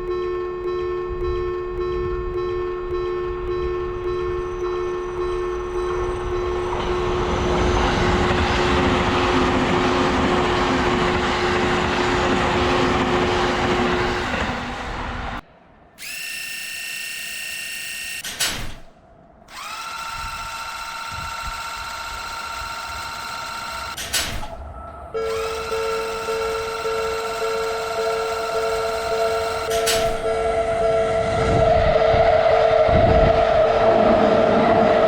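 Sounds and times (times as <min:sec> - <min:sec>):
train rushing past: 0:04.4 - 0:15.4, 0:24.5 - 0:35.0
multi-pitched electric whine: 0:25.2 - 0:31.5
click: 0:29.6 - 0:30.2.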